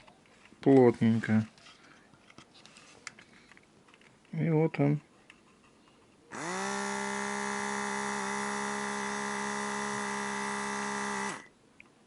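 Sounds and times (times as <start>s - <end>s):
small air pump motor whining: 6.3s - 11.5s.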